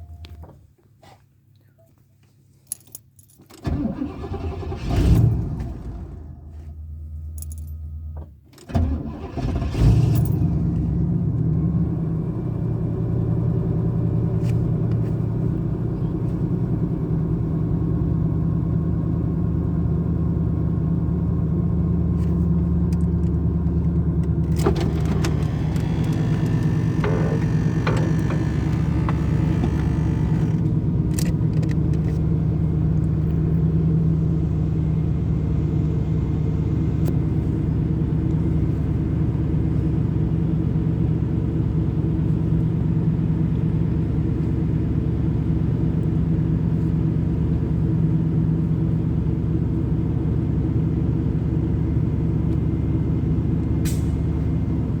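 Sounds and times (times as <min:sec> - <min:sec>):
car engine idling roughly: 0:25.2 - 0:30.7.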